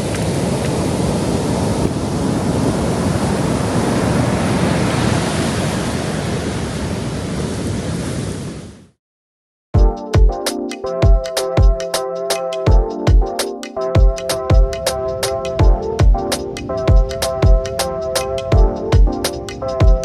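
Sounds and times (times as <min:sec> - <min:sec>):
wind on microphone: 0:00.0 - 0:08.7
ocean surf washing onto beach: 0:00.0 - 0:08.8, 0:14.1 - 0:20.0.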